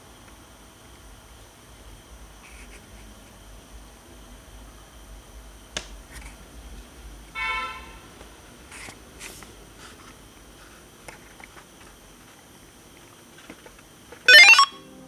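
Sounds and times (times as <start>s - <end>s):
short buzzy beep: 14.3s - 14.8s.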